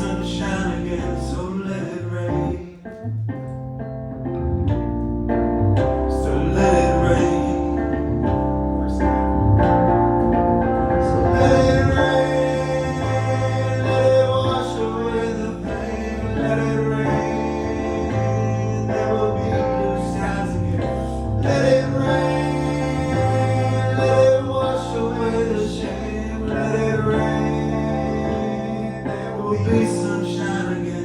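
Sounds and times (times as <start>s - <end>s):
person singing: 6.1s - 7.9s, 11.0s - 31.0s.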